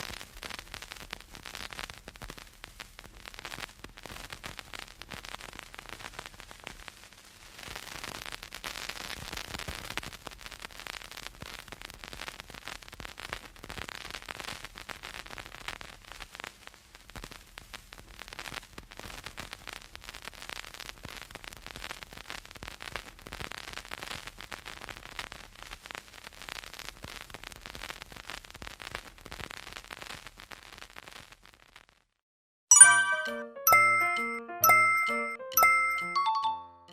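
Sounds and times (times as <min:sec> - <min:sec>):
vinyl crackle and hiss: 0:00.0 - 0:32.2.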